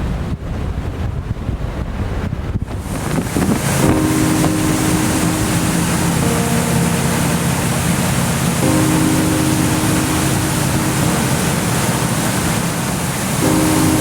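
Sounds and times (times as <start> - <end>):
wind buffeting microphone: 0.0 - 14.0
boat engine drone: 2.7 - 14.0
rushing water: 2.7 - 14.0.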